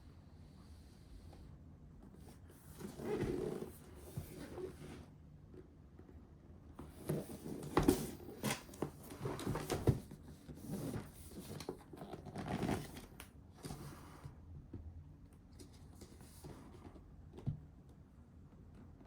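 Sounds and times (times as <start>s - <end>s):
packaging rustling and scraping: 6.8s - 14.0s.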